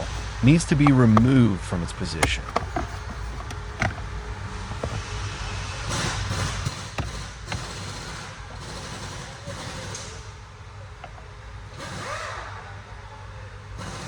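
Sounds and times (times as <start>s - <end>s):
scraping rustle: 0.0s - 7.8s
plastic trim clicks and knocks: 0.8s - 5.4s, 6.0s - 7.7s.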